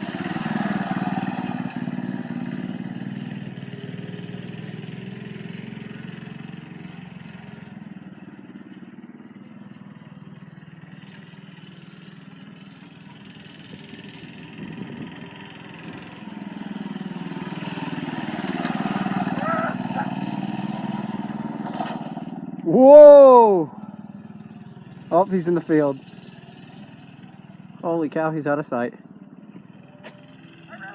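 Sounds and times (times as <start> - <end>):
minibike engine running: 0.0 - 30.9.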